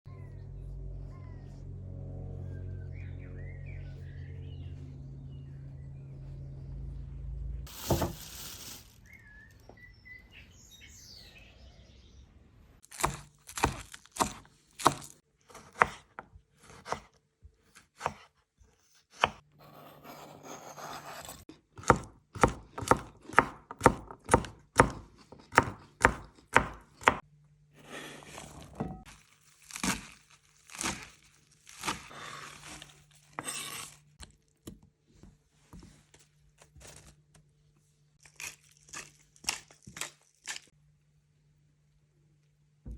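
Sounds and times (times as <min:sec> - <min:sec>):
knife chopping food: 0:12.9 - 0:17.2, 0:17.8 - 0:18.3, 0:19.1 - 0:27.2.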